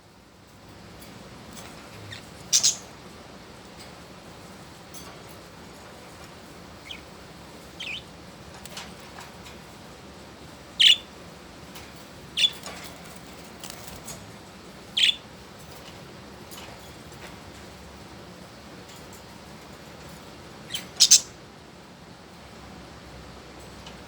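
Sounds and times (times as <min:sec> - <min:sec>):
budgerigars chirping: 0:02.1 - 0:02.9, 0:07.8 - 0:08.1, 0:10.8 - 0:11.1, 0:12.4 - 0:12.6, 0:15.0 - 0:15.2, 0:20.7 - 0:21.4.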